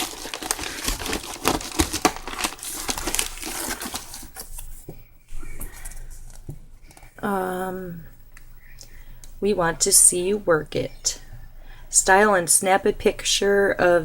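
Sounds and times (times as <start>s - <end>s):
packaging crinkling: 0.0s - 4.8s.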